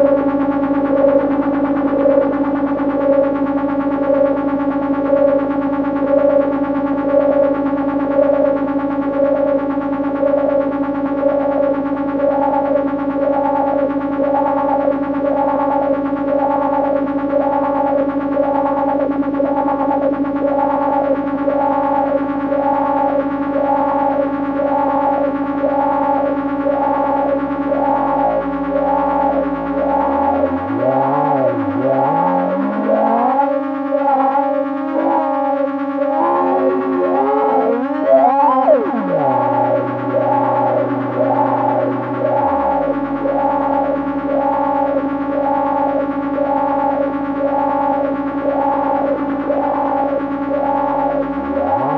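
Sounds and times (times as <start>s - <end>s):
buzzing electronic drone: 0.0s - 51.9s
wobbling gliding pitches: 27.0s - 44.9s.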